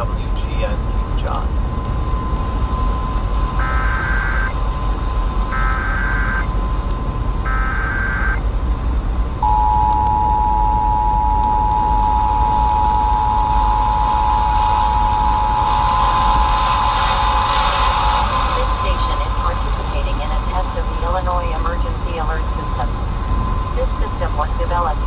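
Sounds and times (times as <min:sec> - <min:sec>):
radio reception hiss: 0:00.0 - 0:01.5, 0:03.5 - 0:04.6, 0:05.5 - 0:06.5, 0:07.4 - 0:08.4, 0:12.4 - 0:25.0
screeching digital header bursts: 0:03.6 - 0:04.6, 0:05.5 - 0:06.5, 0:07.5 - 0:08.4
two-tone attention signal: 0:03.6 - 0:04.6, 0:05.5 - 0:06.5, 0:07.5 - 0:08.4, 0:09.4 - 0:16.9.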